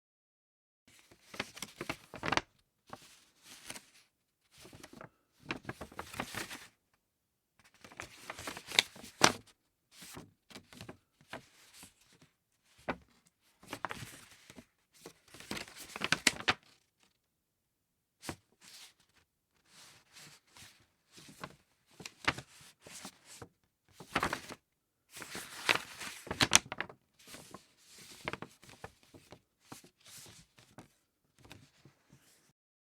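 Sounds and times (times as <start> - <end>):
thick paper rustling and crinkling: 0.9 - 4.0, 4.6 - 6.7, 7.8 - 9.4, 12.8 - 16.8, 19.7 - 32.4.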